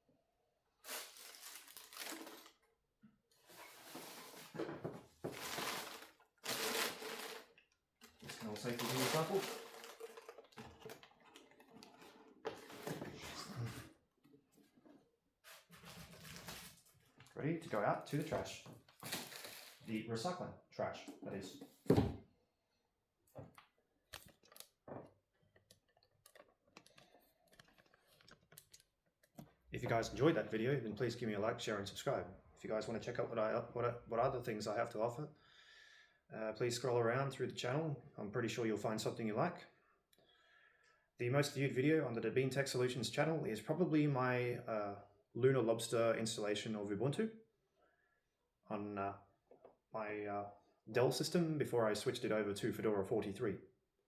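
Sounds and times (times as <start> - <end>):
packaging crinkling and rustling: 0.8 - 2.6, 5.2 - 13.2, 15.5 - 17.2, 18.9 - 19.9, 24.1 - 24.8, 25.5 - 29.4.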